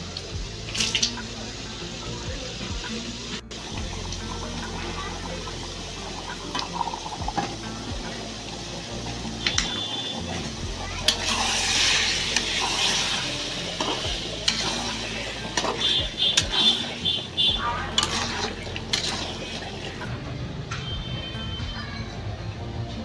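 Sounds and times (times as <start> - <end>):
food sizzling in a pan: 0.0 - 20.1
metal spoon scraping a pan: 9.0 - 20.1.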